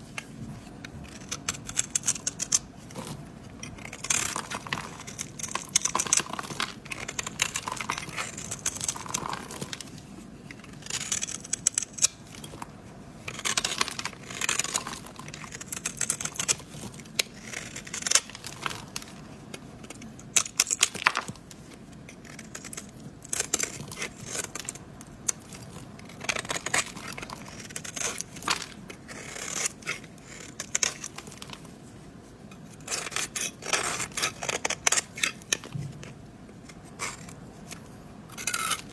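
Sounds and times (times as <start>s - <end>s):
blade carving soap: 0.7s - 31.8s, 32.5s - 38.9s.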